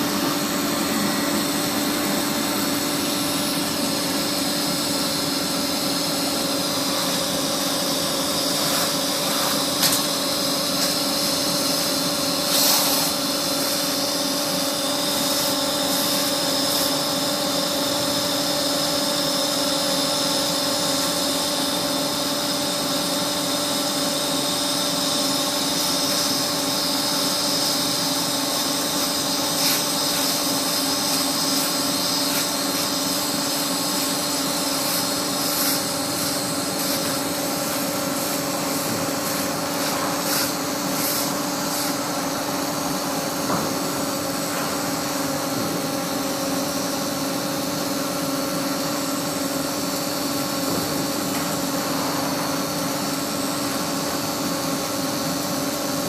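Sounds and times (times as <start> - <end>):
welding machine hum: 0.0 - 56.0
hiss: 3.3 - 42.5.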